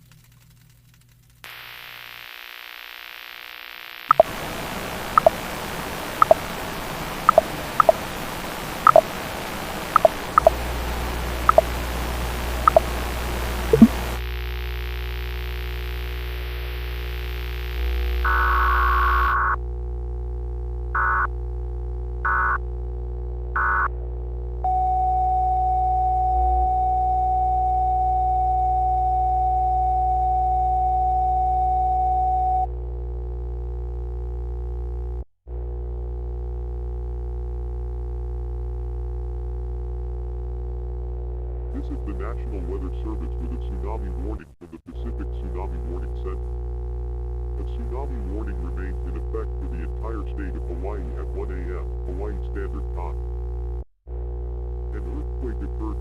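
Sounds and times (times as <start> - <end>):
buzzy data bursts: 1.5 - 19.4.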